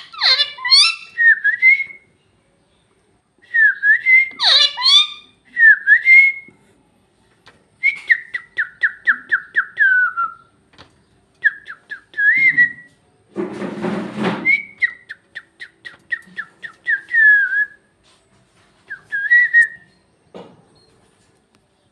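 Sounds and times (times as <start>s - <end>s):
parrot raspy squawk: 0.0s - 1.2s, 4.4s - 5.3s
parrot whistling: 0.0s - 2.0s, 3.7s - 6.4s, 19.1s - 19.8s.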